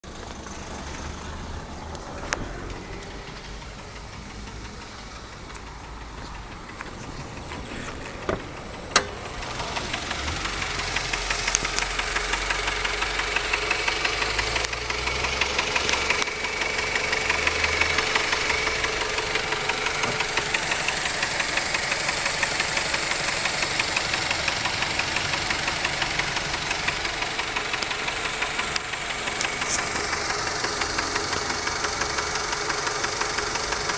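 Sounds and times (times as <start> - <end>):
car engine idling with knock: 0.0 - 33.9
sharp clicks: 8.2 - 33.9.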